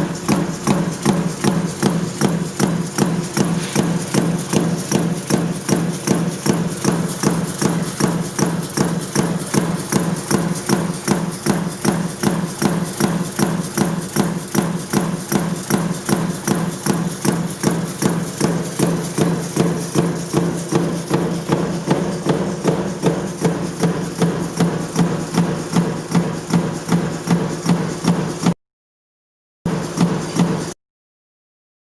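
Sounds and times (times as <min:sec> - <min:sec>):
low machine hum: 0:00.0 - 0:15.4.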